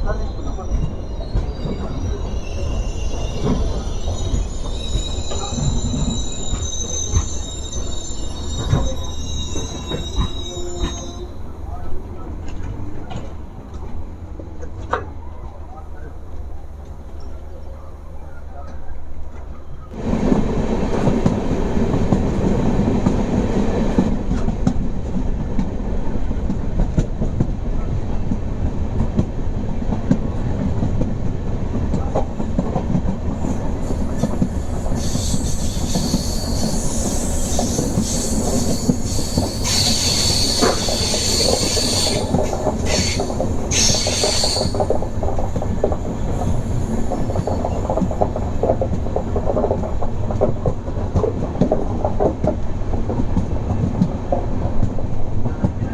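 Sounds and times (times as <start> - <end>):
train wheels squealing: 0.0 - 14.0, 15.2 - 19.9, 32.0 - 51.1
train rumble and wheel clatter: 0.0 - 55.9.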